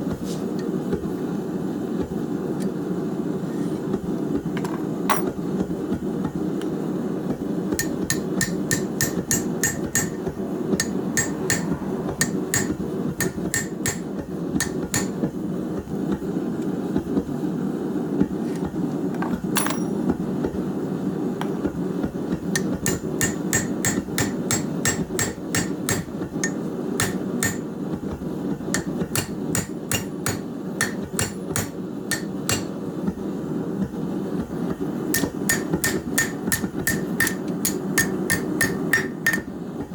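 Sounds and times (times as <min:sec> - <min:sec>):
hammer striking steel on anvil: 0:05.1 - 0:05.4, 0:07.8 - 0:15.2, 0:19.6 - 0:20.1, 0:22.5 - 0:27.7, 0:28.7 - 0:32.8, 0:35.1 - 0:39.6
low rush: 0:10.3 - 0:13.2.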